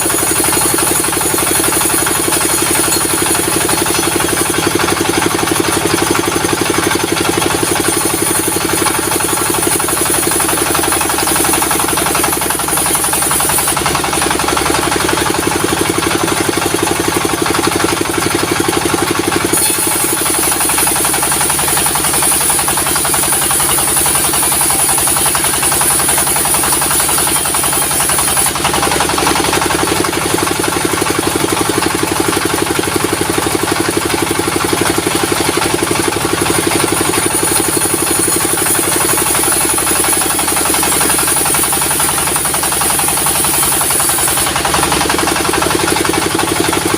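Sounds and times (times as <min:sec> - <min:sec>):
diesel engine knocking: 0:00.0 - 0:46.9
saw cutting wood hiss: 0:07.1 - 0:15.4, 0:19.4 - 0:29.6, 0:36.6 - 0:45.7.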